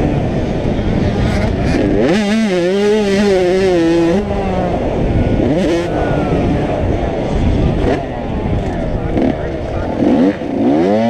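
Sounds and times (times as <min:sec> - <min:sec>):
motocross bike engine revving: 0:00.0 - 0:11.0.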